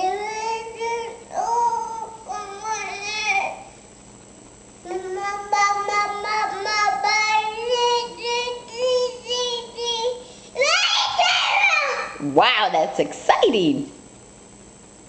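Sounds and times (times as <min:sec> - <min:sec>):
child singing: 0:00.0 - 0:03.6, 0:04.8 - 0:12.2.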